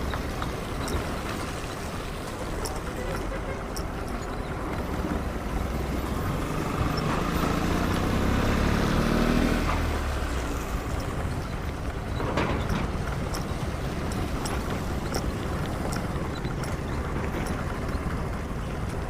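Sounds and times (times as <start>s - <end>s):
low traffic rumble: 0.0s - 19.0s
vehicle passing by: 5.2s - 11.8s.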